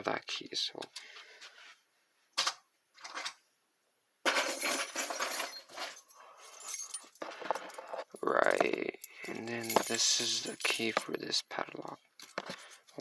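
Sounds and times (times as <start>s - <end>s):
metal padlocks clinking and rattling: 4.4s - 11.2s.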